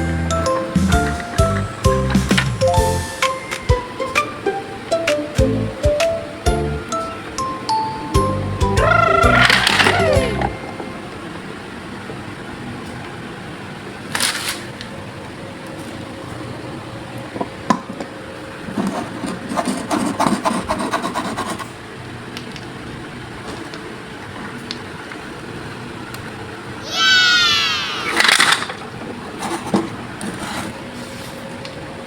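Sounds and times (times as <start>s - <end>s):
toy car rattling clicks: 9.2s - 10.0s, 28.1s - 28.8s.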